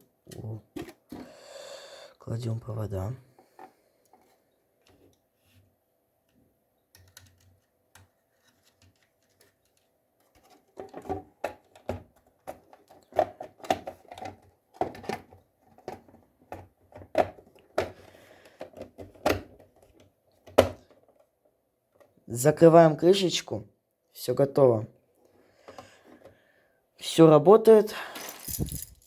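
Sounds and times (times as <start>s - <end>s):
wires clicking and knocking: 6.3s - 14.3s.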